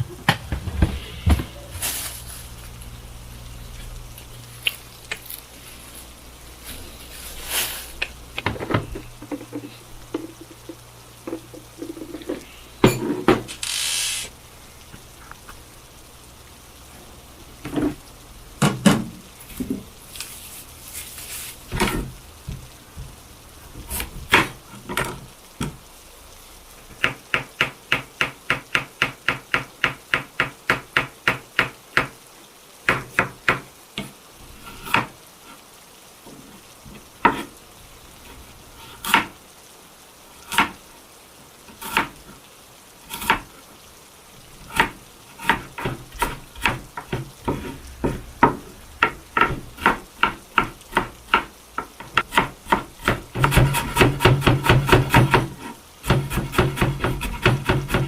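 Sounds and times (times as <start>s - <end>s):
utensils and dishes clattering: 11.3s - 13.9s.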